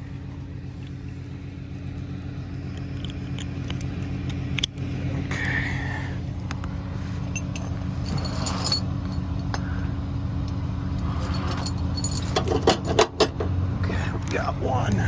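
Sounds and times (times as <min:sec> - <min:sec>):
truck engine idling: 0:00.0 - 0:15.0
metal chain clinks: 0:07.2 - 0:09.6, 0:10.9 - 0:13.5.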